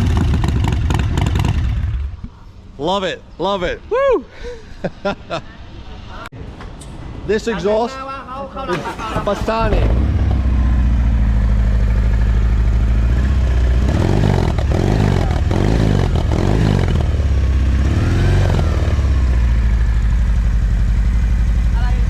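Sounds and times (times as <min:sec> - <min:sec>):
motorcycle engine idling and revving: 0:00.0 - 0:02.3, 0:09.5 - 0:22.0.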